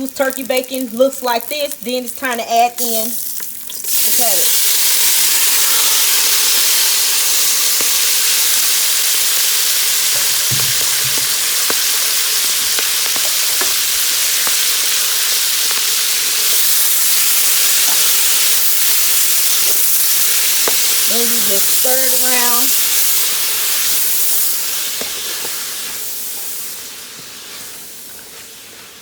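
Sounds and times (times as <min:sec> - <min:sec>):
cabbage sizzling in hot oil: 0:00.0 - 0:29.0
low thump: 0:10.2 - 0:11.3.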